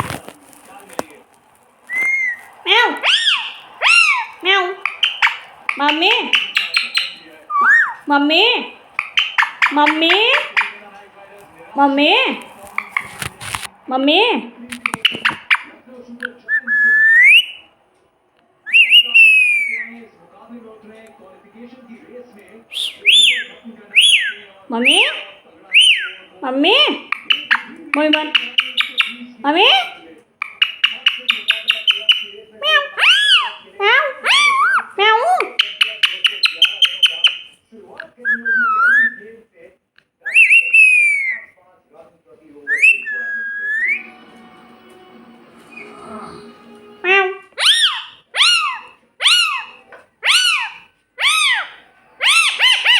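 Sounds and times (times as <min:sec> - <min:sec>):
parrot whistled meow calls: 0:01.9 - 0:05.4, 0:47.6 - 0:52.9
parrot whistling: 0:01.9 - 0:10.9, 0:16.5 - 0:17.7, 0:18.7 - 0:20.0, 0:22.7 - 0:37.5, 0:38.2 - 0:39.2, 0:40.3 - 0:41.6, 0:42.6 - 0:44.4, 0:45.6 - 0:52.9.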